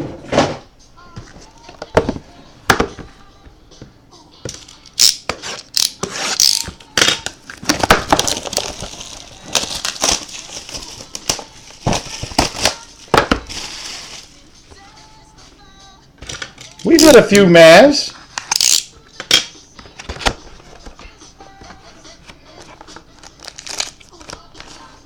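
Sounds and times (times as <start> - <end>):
wrapper crinkling and tearing: 7.2 - 14.4, 23.2 - 24.8.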